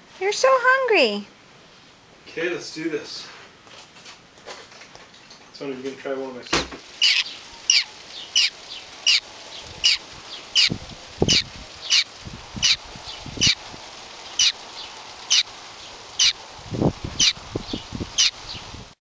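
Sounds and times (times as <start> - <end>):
baby bird begging chirps: 7.0 - 13.6, 14.4 - 14.6, 15.3 - 15.5, 16.2 - 16.4, 17.1 - 18.6.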